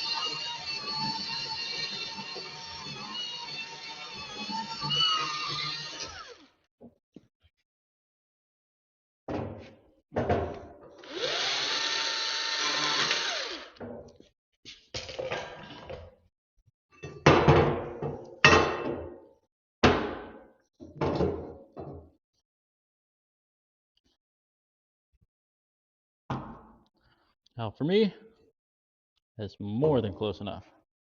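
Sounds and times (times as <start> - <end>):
power tool spinning: 0.0 - 6.5, 11.0 - 13.8.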